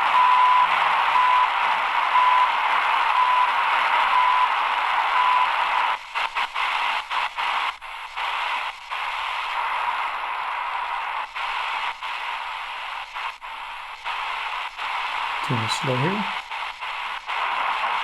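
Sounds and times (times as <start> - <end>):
radio static hiss: 11.2 - 18.0.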